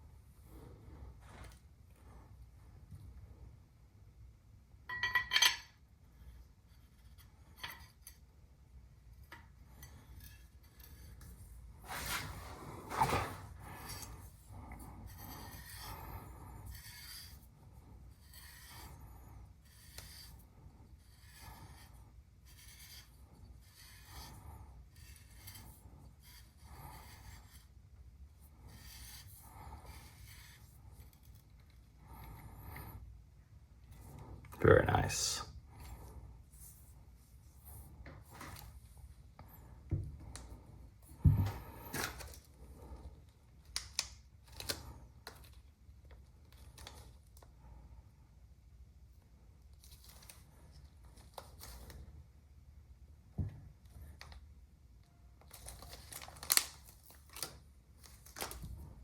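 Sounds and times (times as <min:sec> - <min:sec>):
metal scrape: 0:09.7 - 0:17.5
soft rubbing strokes: 0:10.9 - 0:27.8, 0:35.7 - 0:39.9.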